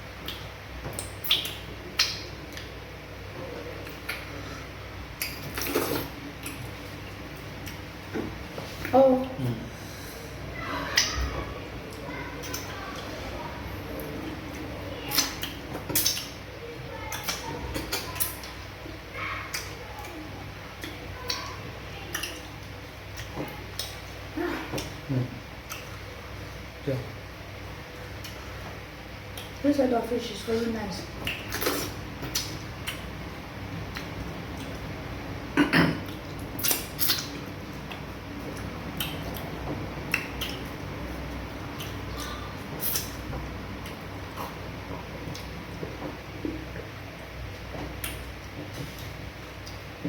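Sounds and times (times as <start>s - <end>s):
person chewing with wet mouth clicks: 0.2s - 2.8s, 5.2s - 7.9s, 14.0s - 16.4s, 17.1s - 18.6s, 19.5s - 24.1s, 25.6s - 26.1s, 29.3s - 29.6s, 31.2s - 33.1s, 33.8s - 34.9s, 36.0s - 49.9s.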